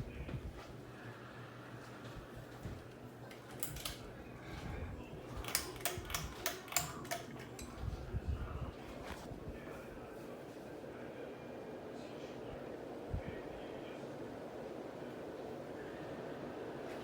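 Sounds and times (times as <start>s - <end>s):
ceiling fan humming: 0.0s - 17.0s
sharp clicks: 5.4s - 7.7s.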